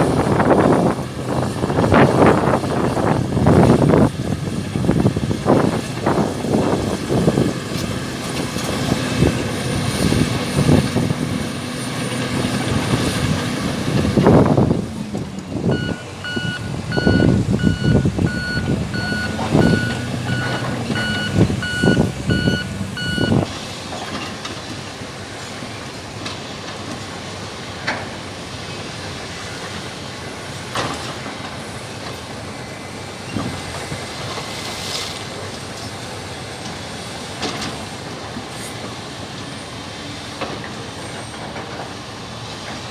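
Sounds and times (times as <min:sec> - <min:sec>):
heavy machinery running: 0:00.0 - 0:42.9
reversing alarm beeping: 0:15.6 - 0:23.5.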